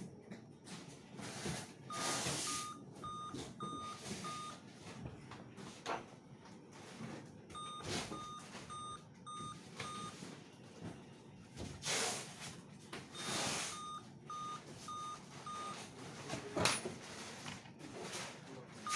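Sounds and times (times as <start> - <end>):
short electronic beeps: 1.9 - 4.6, 7.6 - 10.1, 13.2 - 15.8.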